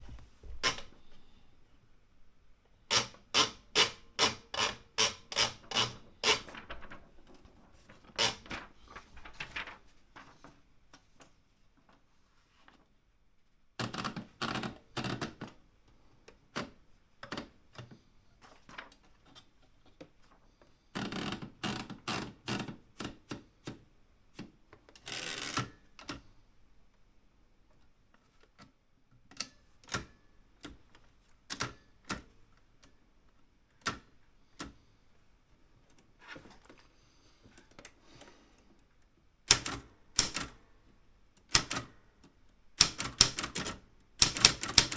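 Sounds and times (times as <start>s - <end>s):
typewriter keys clacking: 39.5s - 40.6s, 41.5s - 41.9s, 42.8s - 44.9s.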